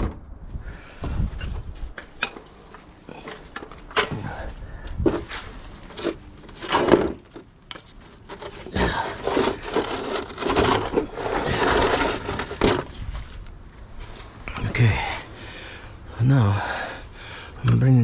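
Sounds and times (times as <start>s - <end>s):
car parts knocking and clattering: 1.4s - 13.4s
parts scraping and rubbing: 5.0s - 14.4s.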